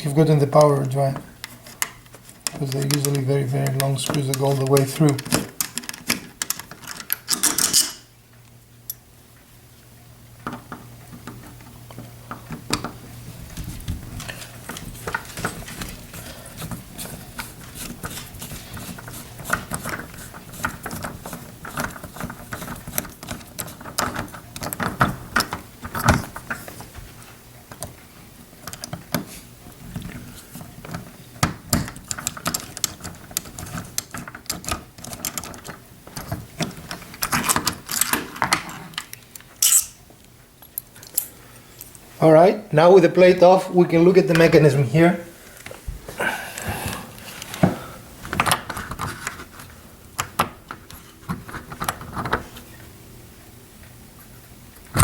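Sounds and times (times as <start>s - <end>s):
low steady hum: 0.0s - 55.0s.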